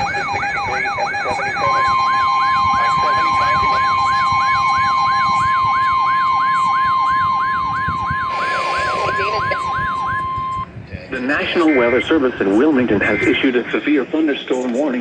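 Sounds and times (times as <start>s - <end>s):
steady alarm tone: 0.0s - 10.7s
sweeping siren-like alert tone: 0.0s - 10.7s.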